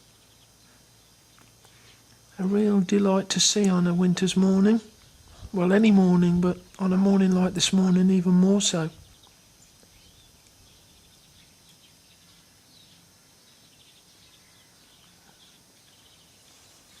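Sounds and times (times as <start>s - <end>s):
sparrows chirping: 0.0s - 17.0s.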